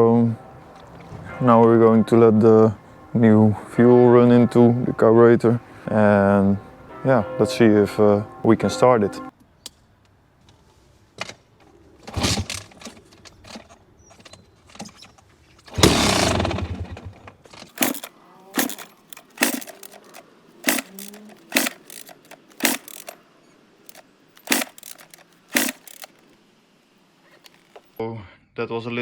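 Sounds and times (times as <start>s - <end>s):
dirt bike kick-start clunk: 17.7s - 23.2s, 23.9s - 26.2s, 27.4s - 27.9s.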